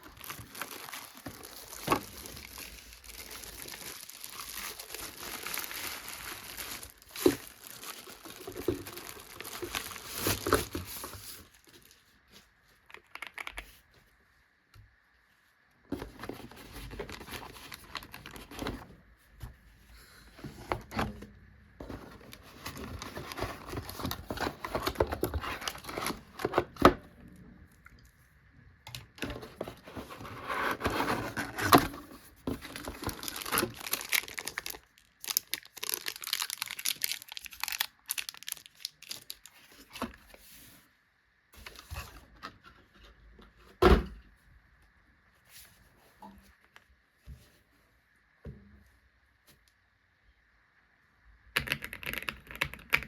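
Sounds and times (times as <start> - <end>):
packaging crinkling and tearing: 0.0 - 12.1, 12.8 - 13.8, 16.2 - 18.8, 22.3 - 26.7, 29.0 - 40.1.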